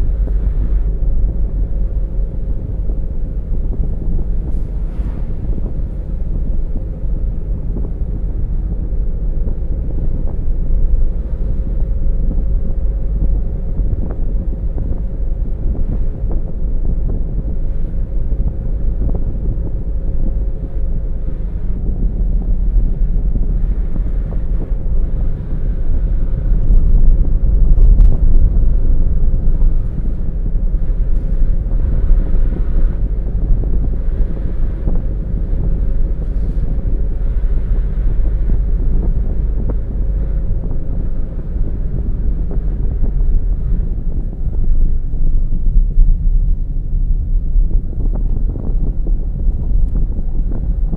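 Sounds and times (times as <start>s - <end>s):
car engine and tyre rumble: 0.0s - 50.9s
faint steady hum: 0.0s - 50.9s
wind buffeting microphone: 0.0s - 50.9s.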